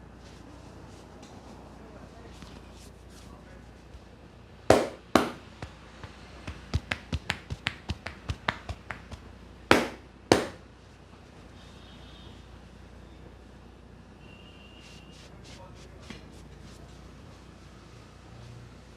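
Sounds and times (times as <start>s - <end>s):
chopping hand taps: 4.7s - 10.6s
hand slaps on head: 4.7s - 10.6s.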